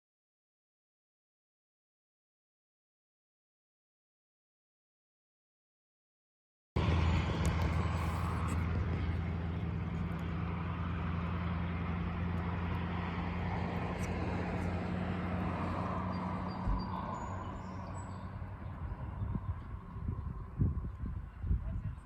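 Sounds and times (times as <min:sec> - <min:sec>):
low engine drone: 0:06.8 - 0:22.0.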